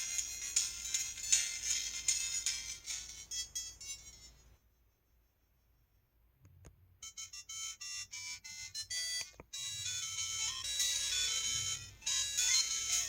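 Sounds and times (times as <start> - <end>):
phone ringtone melody: 0.0 - 4.4, 7.0 - 13.0.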